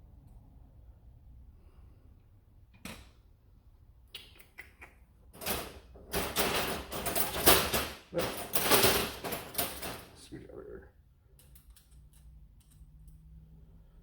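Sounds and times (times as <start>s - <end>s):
tools rattling and scraping: 5.3s - 10.2s.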